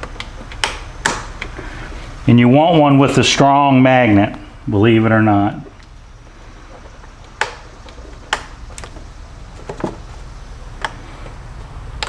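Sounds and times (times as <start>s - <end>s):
faint low hum: 0.0s - 12.0s.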